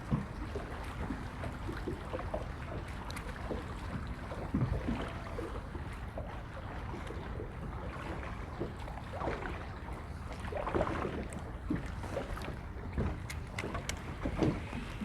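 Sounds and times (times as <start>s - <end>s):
water lapping: 0.0s - 15.0s.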